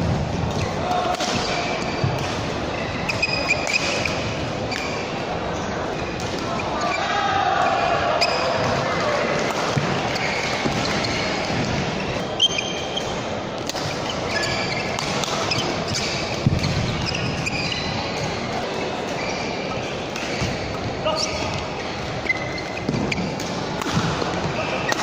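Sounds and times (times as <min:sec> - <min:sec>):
hall background murmur: 0:00.0 - 0:14.3
sneakers squeaking on court floor: 0:01.4 - 0:07.0, 0:08.2 - 0:08.8, 0:09.7 - 0:25.0
racket hitting shuttlecock: 0:22.3 - 0:25.0.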